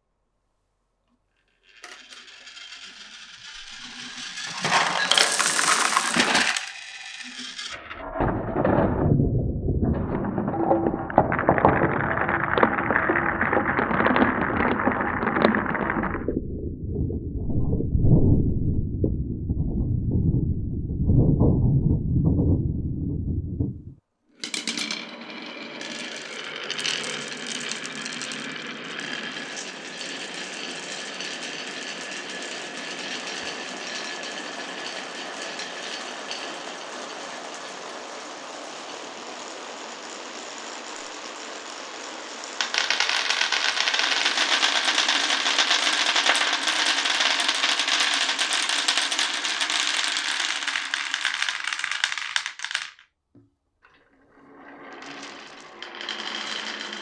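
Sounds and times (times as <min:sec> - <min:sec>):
marbles rattling on wooden run: 0:01.6 - 0:07.8, 0:10.0 - 0:16.2, 0:24.4 - 0:53.1, 0:53.8 - 0:57.0.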